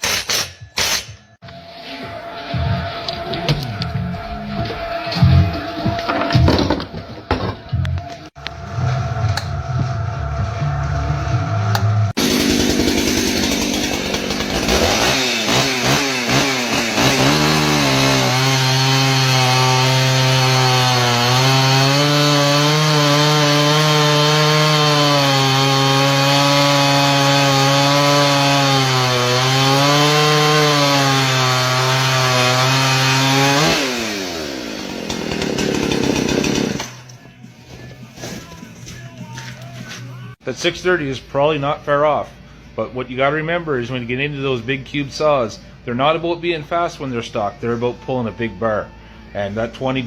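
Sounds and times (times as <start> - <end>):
chainsaw cutting wood: 0.0 - 1.2, 12.2 - 37.1.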